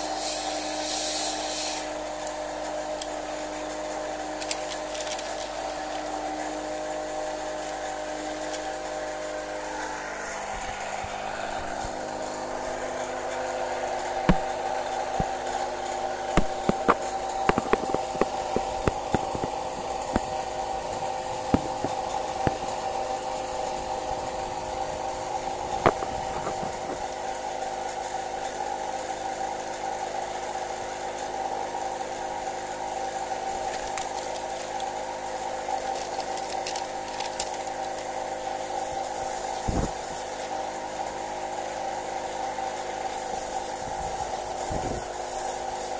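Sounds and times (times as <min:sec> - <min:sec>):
air compressor humming: 0:00.0 - 0:45.9
sharp clicks and knocks: 0:14.2 - 0:22.8.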